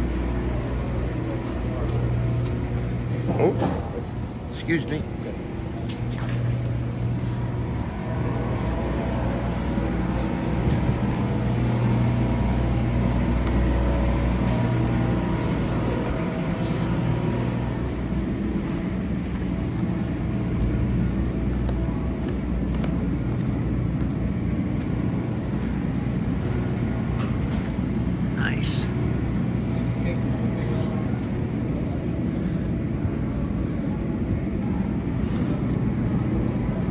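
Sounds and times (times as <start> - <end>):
engine humming: 0.0 - 36.9.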